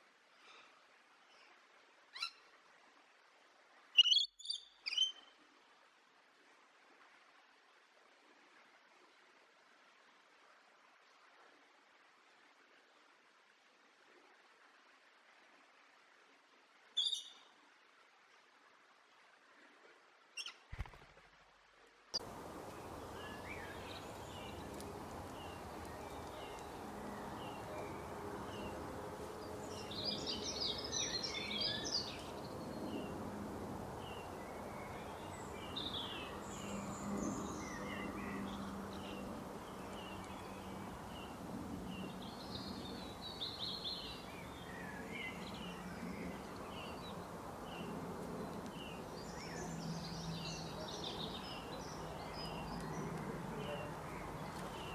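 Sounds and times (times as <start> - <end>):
birds chirping and singing: 22.5 - 33.1.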